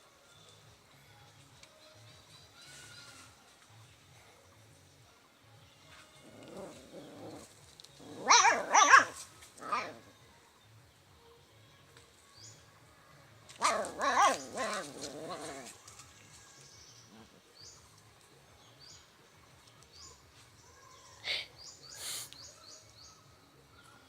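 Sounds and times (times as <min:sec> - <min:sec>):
dog growling and barking: 0:06.2 - 0:10.1, 0:13.6 - 0:15.8.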